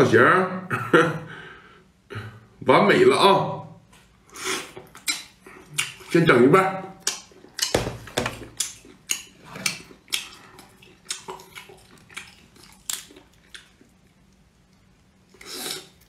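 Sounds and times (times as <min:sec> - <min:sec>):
person chewing shellfish: 0:04.6 - 0:06.1, 0:07.0 - 0:16.0.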